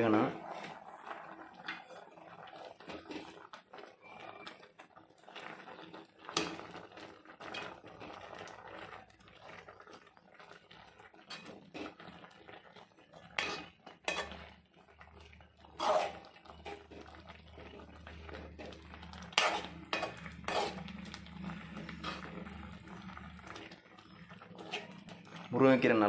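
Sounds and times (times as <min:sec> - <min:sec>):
metal utensil clinking on pot: 0:11.2 - 0:12.0, 0:13.2 - 0:14.6, 0:18.4 - 0:21.2.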